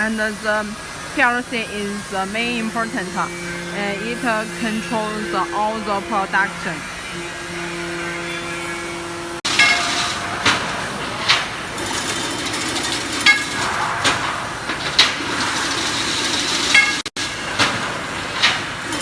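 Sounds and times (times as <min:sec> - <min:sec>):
fence weaving machine running: 0:00.0 - 0:07.1, 0:09.4 - 0:19.0
sharp metallic clank: 0:09.4 - 0:15.6.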